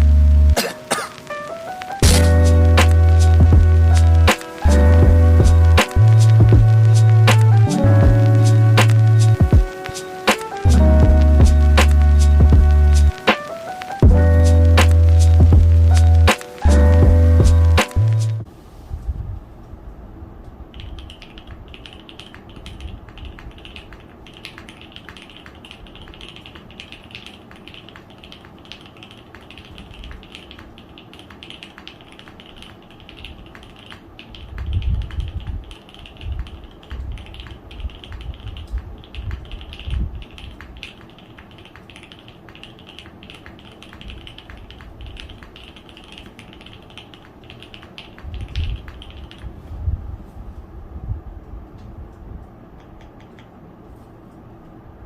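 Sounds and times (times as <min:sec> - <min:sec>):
heavy low keyboard thumps: 0:02.0 - 0:09.7, 0:10.7 - 0:13.2, 0:14.0 - 0:18.4
mechanical keyboard typing: 0:20.7 - 0:49.5.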